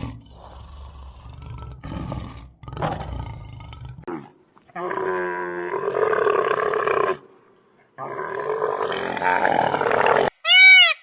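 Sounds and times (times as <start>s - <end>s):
big cat roaring: 0.0s - 7.2s, 8.0s - 10.3s
high-pitched animal call: 8.9s - 11.0s.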